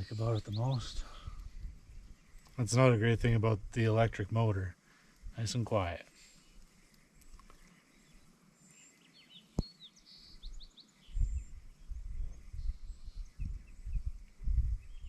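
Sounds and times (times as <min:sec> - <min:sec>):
low uneven rumble: 0:00.0 - 0:04.7
small birds chirping: 0:00.0 - 0:15.0.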